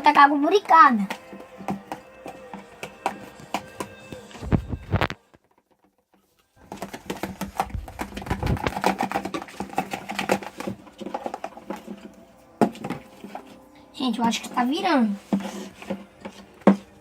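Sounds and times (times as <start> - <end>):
slime being stirred and squished: 6.1 - 17.0.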